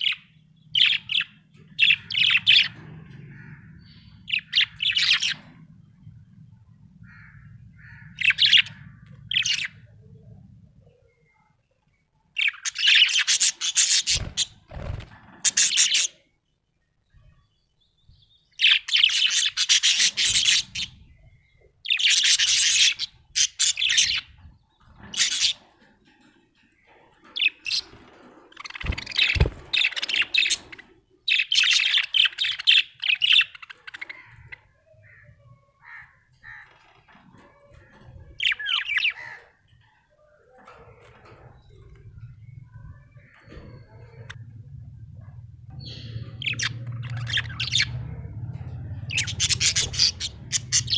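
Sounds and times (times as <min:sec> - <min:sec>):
budgerigar chirping: 0:49.1 - 0:50.9.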